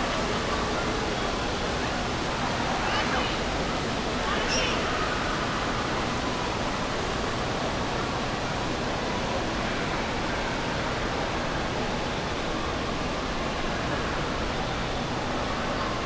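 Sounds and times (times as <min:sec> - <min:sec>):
rushing splashing water: 0:00.0 - 0:08.9.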